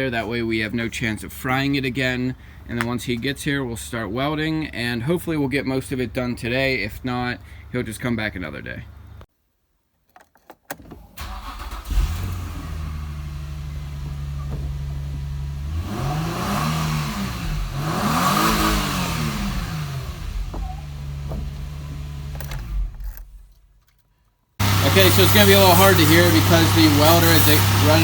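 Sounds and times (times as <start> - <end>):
engine idling and revving: 11.2 - 23.4, 24.6 - 28.0.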